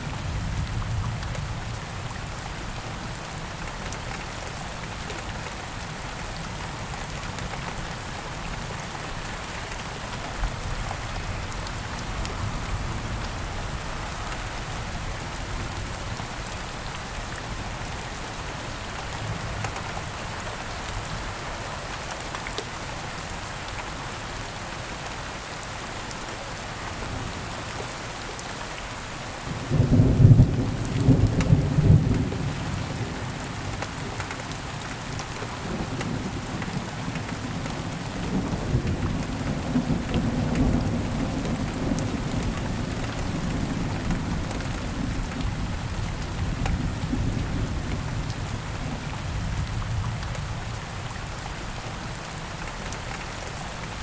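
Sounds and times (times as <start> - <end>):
steady rain: 0.0 - 54.0
thunder clap and rumble: 35.6 - 50.8.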